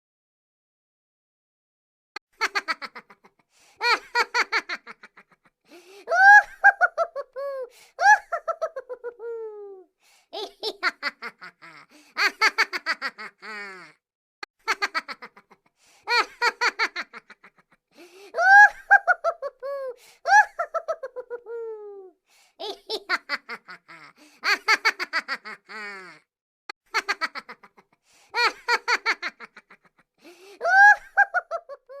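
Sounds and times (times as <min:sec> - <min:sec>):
high-pitched cartoon laughing: 0:06.1 - 0:14.0, 0:14.7 - 0:26.2, 0:30.6 - 0:32.0.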